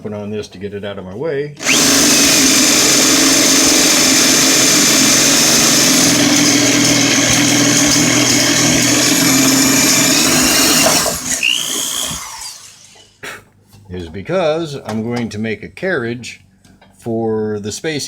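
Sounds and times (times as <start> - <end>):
power tool motor whining: 1.6 - 13.2.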